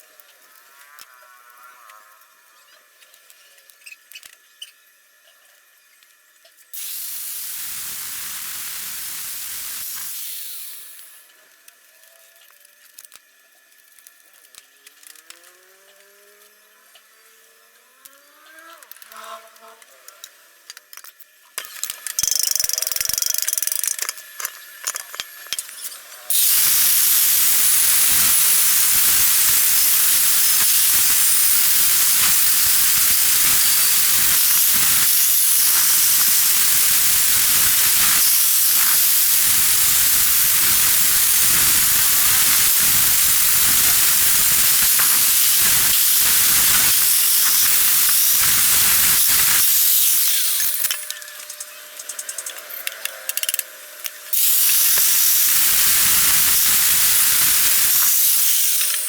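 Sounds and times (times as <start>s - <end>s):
welding torch flame hissing: 6.7s - 11.3s, 21.8s - 59.0s.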